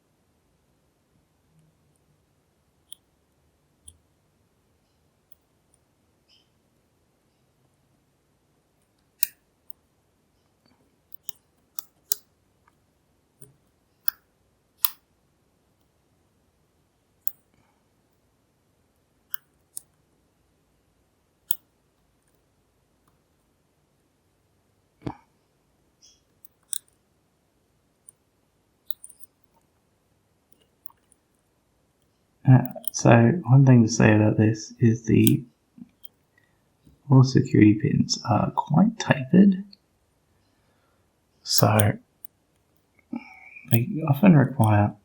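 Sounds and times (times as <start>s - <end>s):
lock pick clicking in lock: 11.1s - 12.3s, 14.8s - 15.0s, 26.4s - 27.0s, 28.9s - 29.4s, 30.6s - 31.2s, 32.6s - 33.0s, 41.6s - 41.9s.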